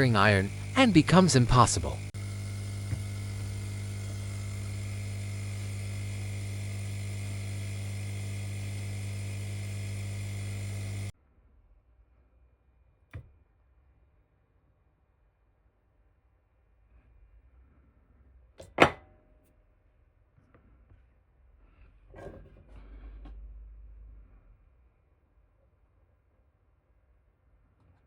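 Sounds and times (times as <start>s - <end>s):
electrical mains hum: 0.0s - 11.2s.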